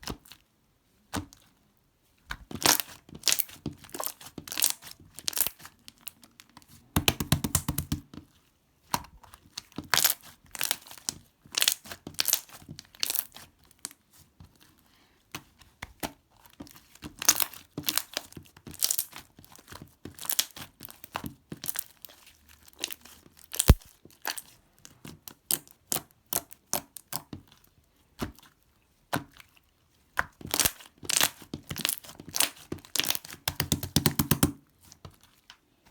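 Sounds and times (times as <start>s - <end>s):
packaging crackling and tearing: 23.6s - 23.9s
sharp click: 23.6s - 23.9s.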